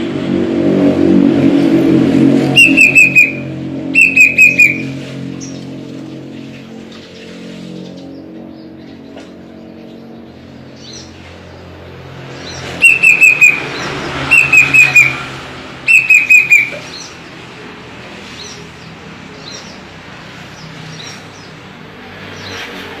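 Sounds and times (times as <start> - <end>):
cuckoo whistled calls: 2.6 - 5.0, 12.8 - 15.2, 15.9 - 17.1.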